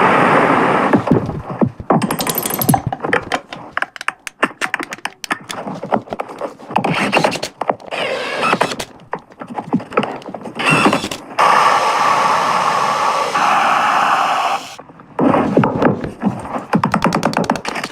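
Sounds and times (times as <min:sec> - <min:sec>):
rapid sharp clicks and knocks: 0:01.0 - 0:07.9, 0:16.7 - 0:17.9.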